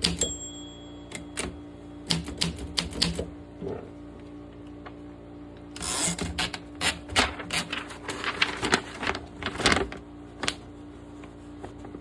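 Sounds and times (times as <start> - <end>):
manual typewriter keys clacking: 0.0 - 0.3, 1.1 - 3.3.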